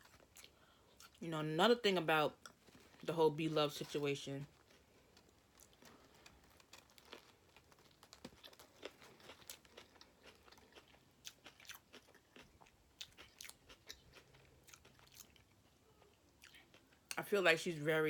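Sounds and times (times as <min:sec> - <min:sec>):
person chewing food: 0:00.0 - 0:01.2, 0:04.5 - 0:17.2.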